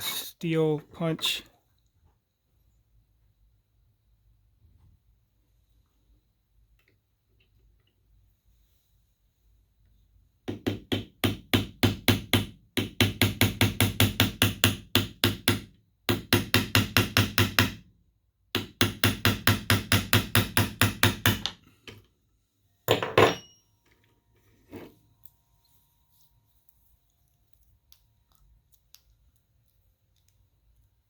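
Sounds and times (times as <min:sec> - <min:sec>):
hammer tapping a steel punch: 0:18.6 - 0:21.6.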